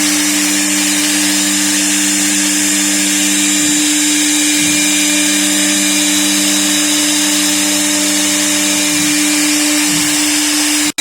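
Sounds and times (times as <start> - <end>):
router spindle motor tone with hiss: 0.0 - 11.0.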